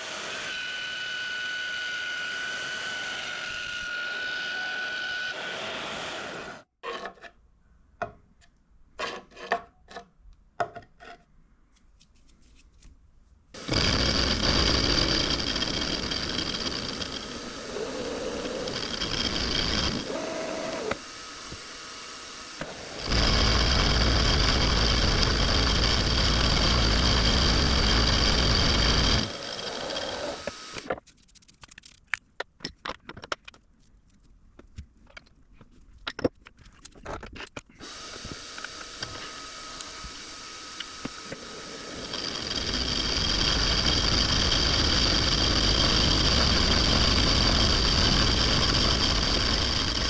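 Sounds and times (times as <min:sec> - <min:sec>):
machine tool whine: 0:13.6 - 0:30.9, 0:37.8 - 0:50.0
cutting and scraping: 0:13.6 - 0:31.0, 0:40.8 - 0:50.0.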